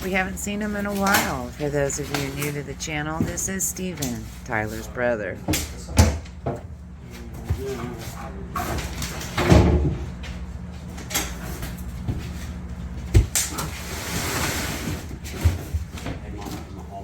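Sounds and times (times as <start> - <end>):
cabinet scraping slide: 13.6 - 15.1.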